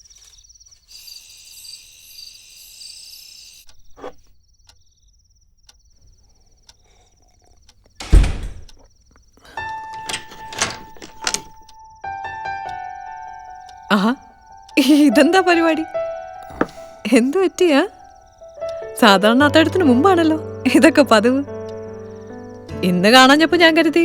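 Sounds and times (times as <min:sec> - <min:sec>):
crickets chirping: 0:00.0 - 0:24.0
heavy thud: 0:08.0 - 0:08.7
music: 0:09.6 - 0:24.0.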